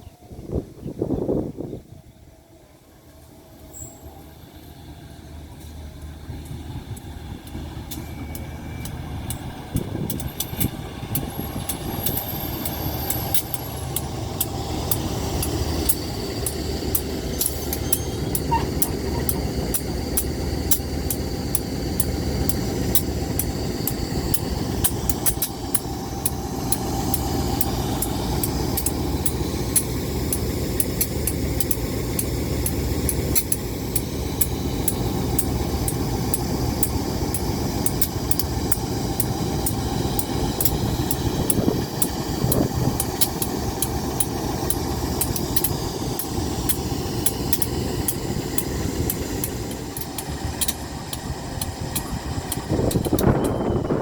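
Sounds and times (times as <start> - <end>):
diesel locomotive engine rumbling: 0.0 - 54.0
sharp ticks: 7.0 - 53.9.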